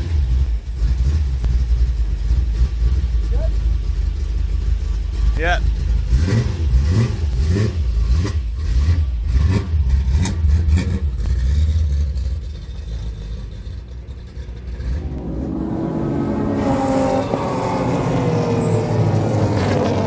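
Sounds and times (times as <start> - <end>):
car engines rumbling: 0.0 - 20.0
race car accelerating past: 14.7 - 20.0.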